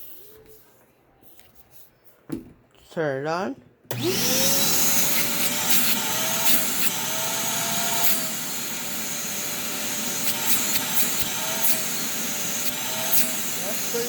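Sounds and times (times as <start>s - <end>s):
shop vacuum running: 3.9s - 14.0s.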